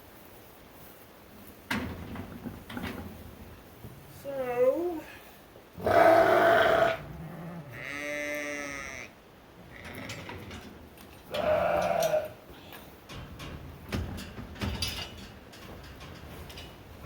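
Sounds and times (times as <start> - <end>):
sheep bleating: 5.8 - 7.0, 7.7 - 10.2, 11.3 - 12.4.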